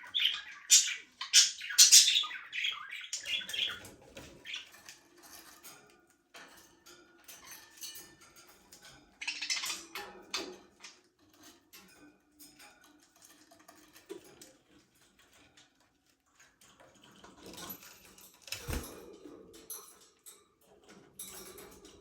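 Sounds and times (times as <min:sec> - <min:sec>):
budgerigars chirping: 0:00.0 - 0:04.7, 0:09.2 - 0:09.9.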